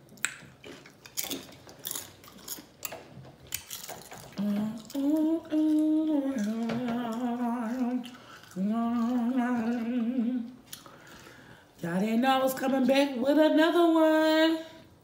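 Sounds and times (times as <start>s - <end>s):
woman humming: 4.4s - 10.6s.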